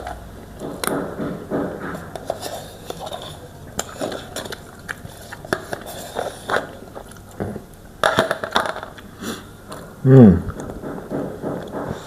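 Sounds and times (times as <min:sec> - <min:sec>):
person biting and chewing food: 0:01.9 - 0:10.9.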